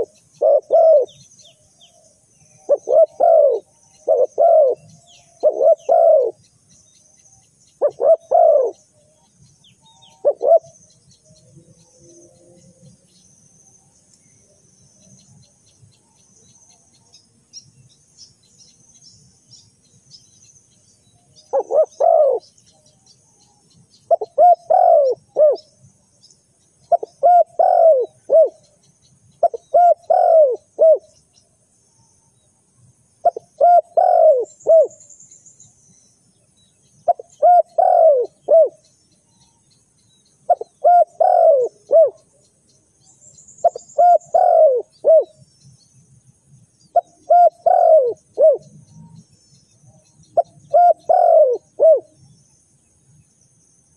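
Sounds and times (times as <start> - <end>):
dove cooing: 0.0 - 1.2, 2.6 - 6.4, 7.8 - 8.8, 9.9 - 10.8, 21.5 - 22.5, 24.1 - 25.6, 26.9 - 28.6, 29.4 - 31.1, 33.2 - 35.0, 37.1 - 38.8, 40.5 - 42.3, 43.6 - 45.3, 47.0 - 48.7, 50.4 - 52.1
faint high insect buzz: 0.0 - 53.9.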